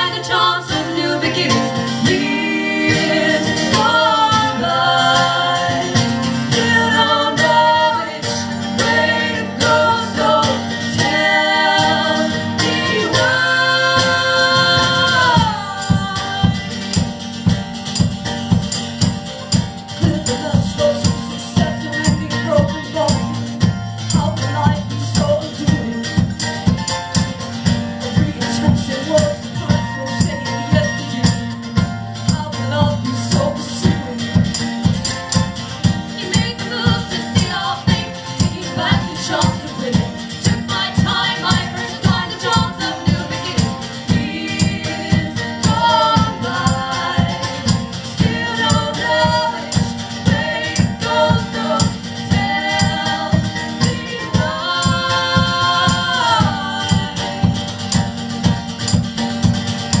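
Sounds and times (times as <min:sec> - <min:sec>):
person singing: 0:00.0 - 0:16.9
live band music: 0:00.0 - 1:00.0
tambourine jingles: 0:09.8 - 1:00.0.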